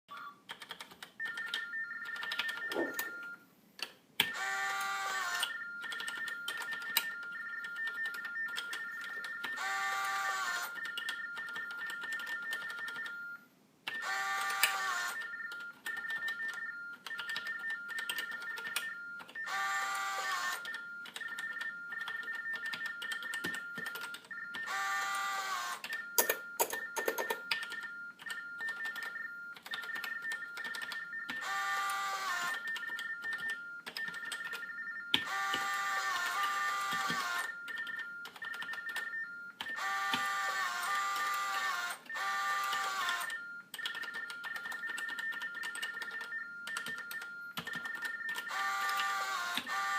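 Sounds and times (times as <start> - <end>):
keyboard clicks: 0.1 - 9.6, 20.6 - 24.7, 25.8 - 40.4, 41.1 - 49.9
warbling modem tones: 1.3 - 3.4
small printer buzzing: 4.4 - 5.4, 9.6 - 10.7, 14.0 - 15.2, 19.4 - 20.7, 24.7 - 25.8, 31.4 - 32.5, 35.3 - 37.5, 39.8 - 43.4, 48.5 - 49.9.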